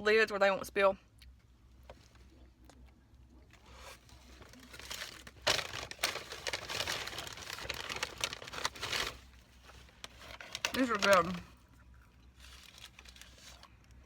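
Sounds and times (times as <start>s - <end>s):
paper packaging crinkling: 3.6s - 11.5s, 12.4s - 14.0s.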